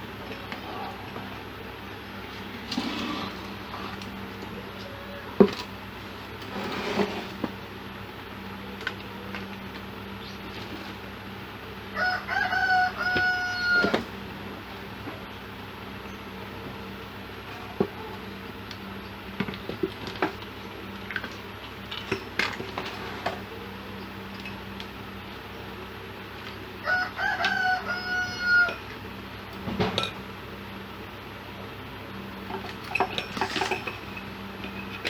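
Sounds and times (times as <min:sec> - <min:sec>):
rooster crowing: 0:04.5 - 0:05.4, 0:11.9 - 0:14.2, 0:26.8 - 0:28.9.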